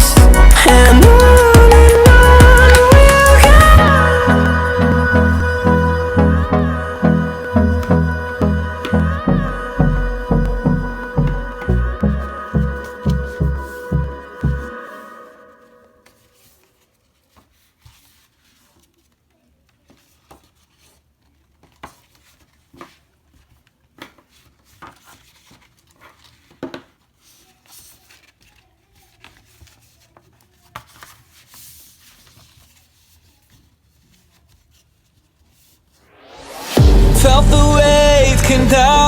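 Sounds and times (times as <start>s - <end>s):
paper crinkling and rustling: 16.0s - 36.0s.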